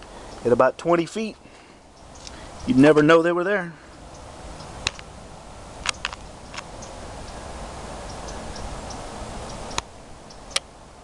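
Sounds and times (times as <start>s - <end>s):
steady low hiss: 0.0s - 11.0s
sharp irregular clicks: 5.8s - 6.9s.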